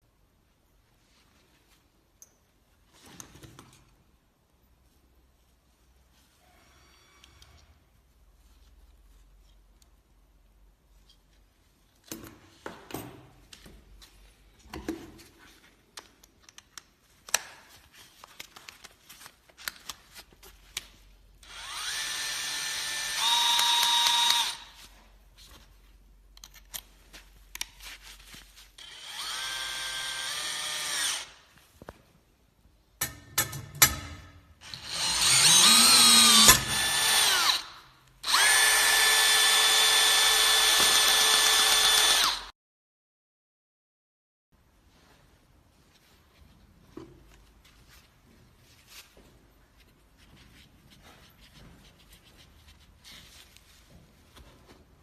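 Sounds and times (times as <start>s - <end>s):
power drill motor whine: 21.4s - 24.7s, 28.8s - 31.4s, 34.6s - 42.5s.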